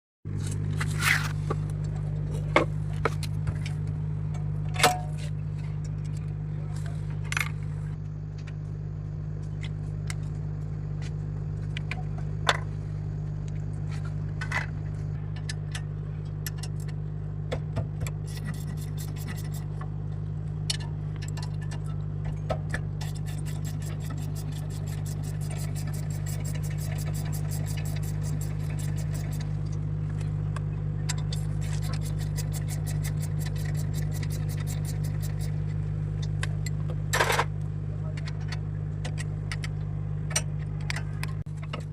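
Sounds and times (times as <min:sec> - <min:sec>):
steady low hum: 0:00.3 - 0:41.9.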